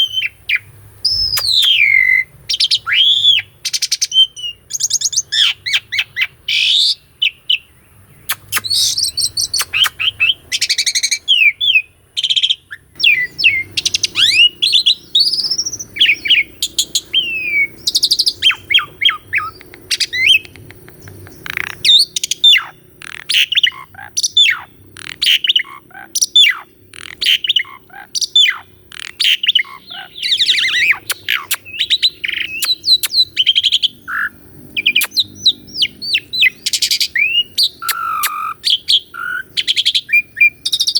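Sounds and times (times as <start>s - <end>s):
starling singing: 0.0s - 40.9s.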